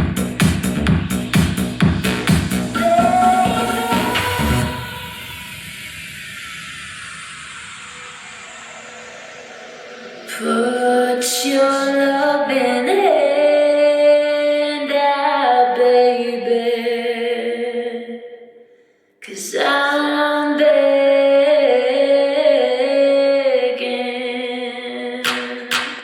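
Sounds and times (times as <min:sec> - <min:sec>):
woman singing long notes: 0:02.8 - 0:05.4.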